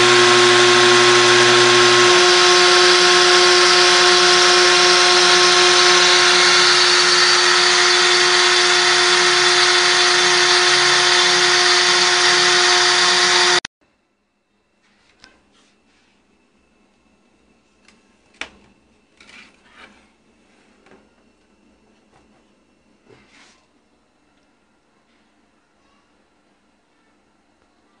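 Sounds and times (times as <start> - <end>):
motor hum: 0.0 - 13.7
router spindle whine: 0.0 - 13.7.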